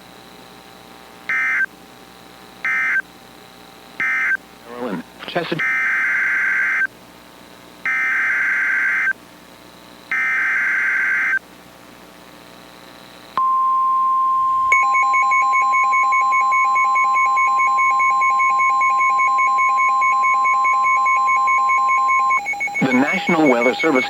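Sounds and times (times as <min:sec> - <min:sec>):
rapidly pulsing beep: 0:13.4 - 0:24.0
steady alert tone: 0:14.0 - 0:15.5.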